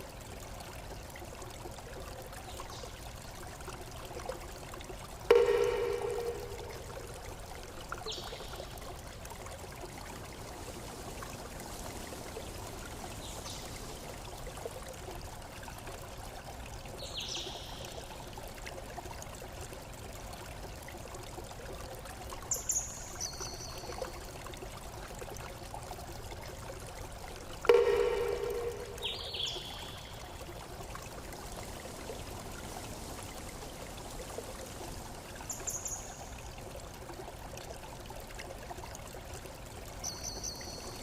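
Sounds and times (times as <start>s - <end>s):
stream water trickling: 0.0s - 41.0s
high chirps: 5.3s - 7.0s, 27.7s - 30.1s.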